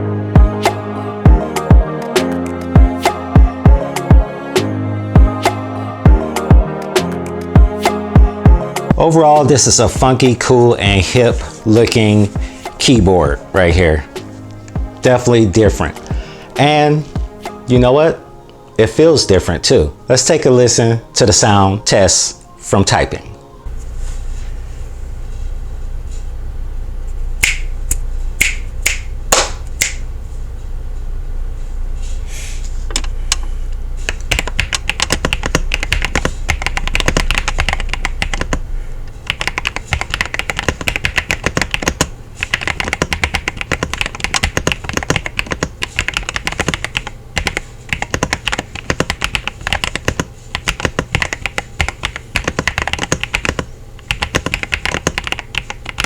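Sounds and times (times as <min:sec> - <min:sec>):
mechanical keyboard typing: 0:34.1 - 0:38.6, 0:39.2 - 0:56.0.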